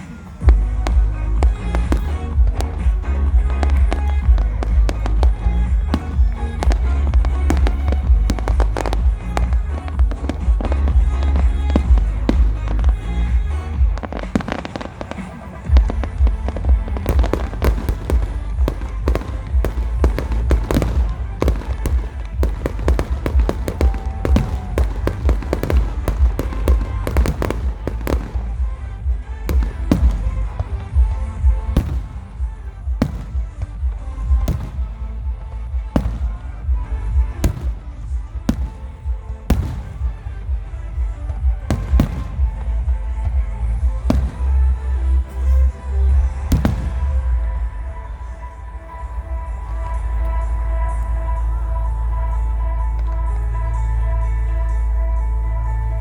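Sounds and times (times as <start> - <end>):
fireworks bangs: 0.0 - 54.8
steady deep rumble: 0.4 - 56.0.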